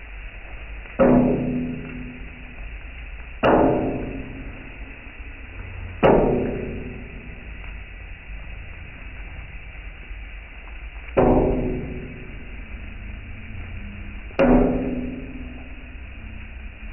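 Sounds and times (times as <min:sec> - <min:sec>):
ringing percussion hits: 0:01.0 - 0:02.5, 0:03.4 - 0:04.9, 0:05.8 - 0:07.6, 0:11.2 - 0:13.2, 0:14.0 - 0:16.4.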